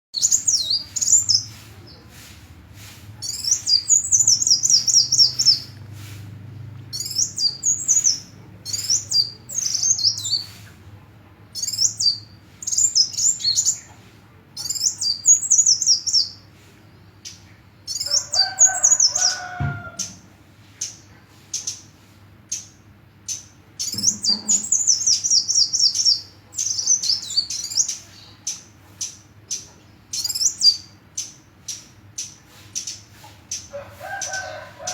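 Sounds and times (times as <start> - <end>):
bird twittering: 3.2 - 5.8, 6.9 - 10.5, 22.5 - 34.9.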